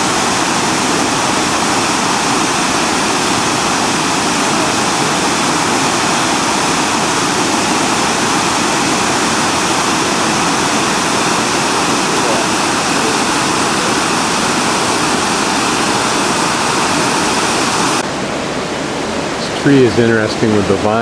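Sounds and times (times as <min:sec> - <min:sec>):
waterfall rushing: 0:00.0 - 0:21.0.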